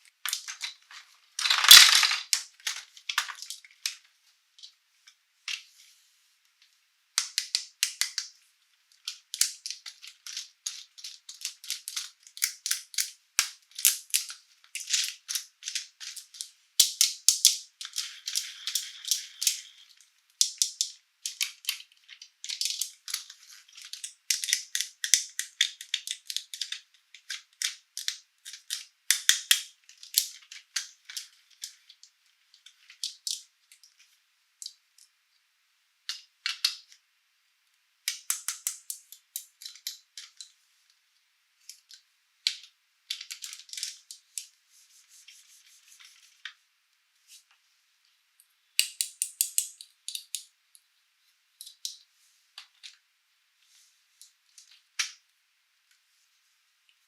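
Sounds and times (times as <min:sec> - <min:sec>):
plastic toy pieces clattering: 0:00.2 - 0:04.0, 0:09.0 - 0:31.8, 0:41.7 - 0:44.2.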